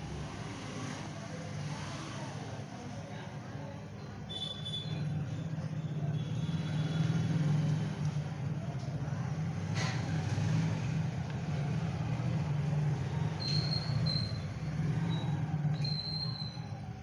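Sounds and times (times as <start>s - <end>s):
high-pitched whistling tones: 13.3s - 16.9s.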